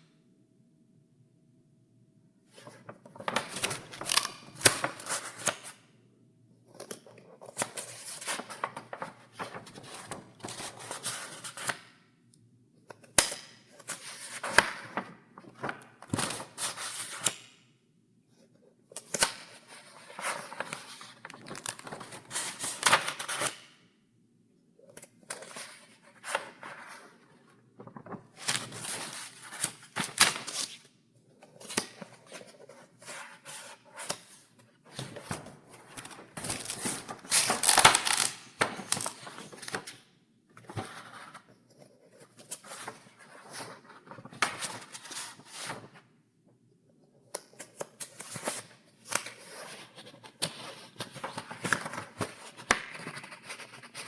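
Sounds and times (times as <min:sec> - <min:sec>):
paper pages turning: 0:02.6 - 0:05.6, 0:07.6 - 0:11.7, 0:19.7 - 0:23.5, 0:27.8 - 0:30.7, 0:34.9 - 0:40.0, 0:42.1 - 0:45.9.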